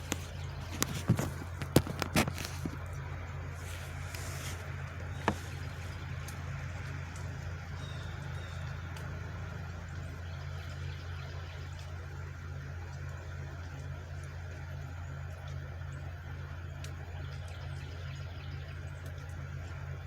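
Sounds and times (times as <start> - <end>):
vehicle engine idling: 0.0 - 20.0.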